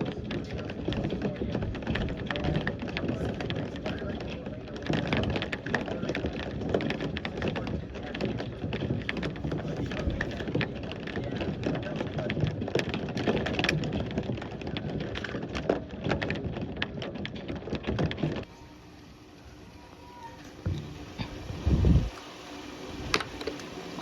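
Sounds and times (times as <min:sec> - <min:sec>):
heavy rain pattering: 0:00.0 - 0:17.1.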